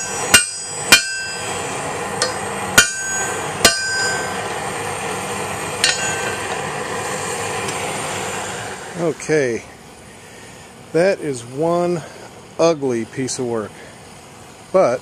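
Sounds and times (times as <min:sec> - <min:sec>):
hammer striking metal on anvil: 0:00.0 - 0:01.6, 0:02.2 - 0:04.6, 0:05.8 - 0:06.7
steady rushing noise: 0:00.0 - 0:09.8.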